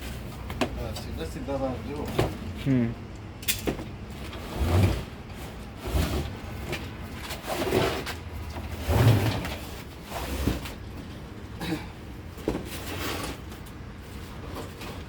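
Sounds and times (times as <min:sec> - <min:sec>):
ladder sliding out of cardboard box: 0:04.1 - 0:10.8, 0:12.5 - 0:15.0.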